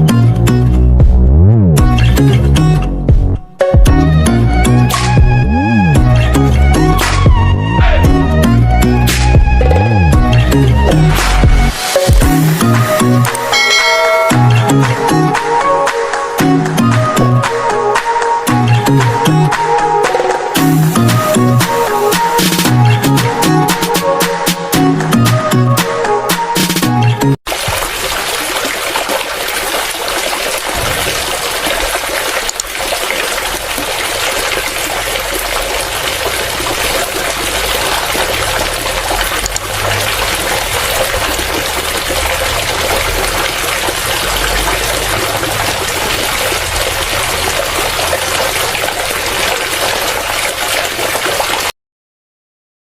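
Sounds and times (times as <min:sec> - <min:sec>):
water pump gushing and splashing: 0:08.0 - 0:24.7, 0:27.5 - 0:51.7.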